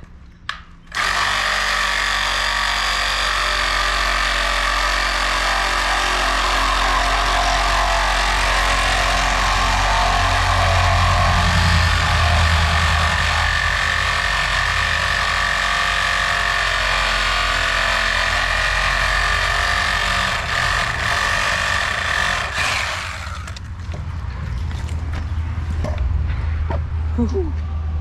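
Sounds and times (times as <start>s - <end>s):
diesel engine running: 4.4s - 17.6s.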